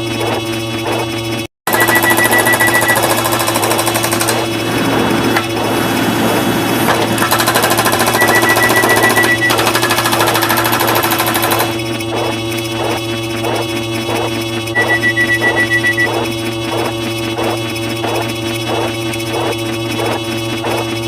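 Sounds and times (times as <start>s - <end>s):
high beeping tone: 1.7s - 3.2s, 8.0s - 9.6s, 14.8s - 16.2s
low drones: 4.2s - 7.3s.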